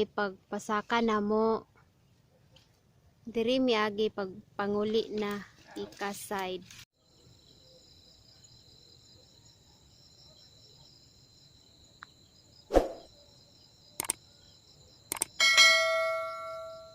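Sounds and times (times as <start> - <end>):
sharp thud: 12.7 - 13.1
short clicks: 14.0 - 14.2, 15.1 - 15.4
bell-like chime: 15.4 - 16.9.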